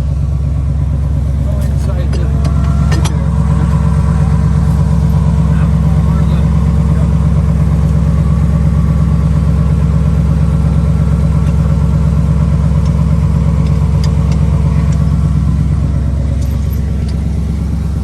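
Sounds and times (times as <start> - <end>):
truck engine idling: 0.0 - 18.0.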